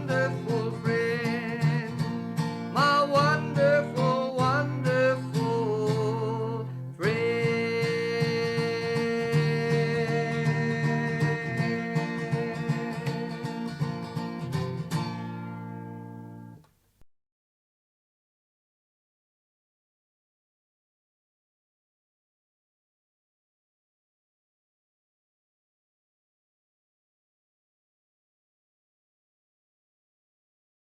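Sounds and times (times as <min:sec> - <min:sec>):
person singing: 0:00.0 - 0:14.0
strummed acoustic guitar: 0:00.0 - 0:16.7.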